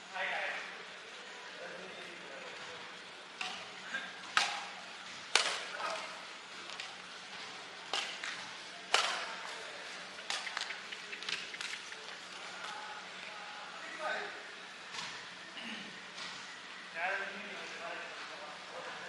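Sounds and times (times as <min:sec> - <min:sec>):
racket hitting shuttlecock: 0:03.4 - 0:06.1, 0:07.9 - 0:09.4, 0:10.2 - 0:10.7.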